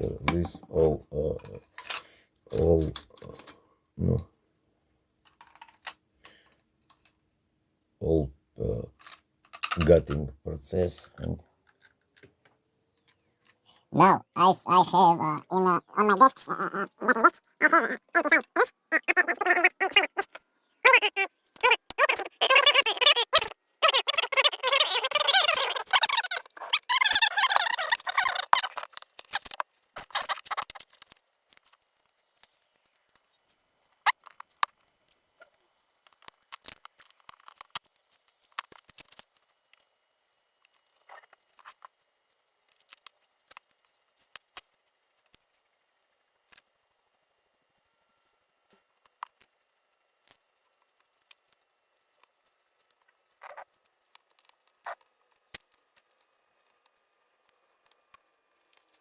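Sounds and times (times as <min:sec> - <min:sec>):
small metal parts clicking: 0:05.2 - 0:06.0, 0:08.9 - 0:09.9, 0:27.6 - 0:33.2.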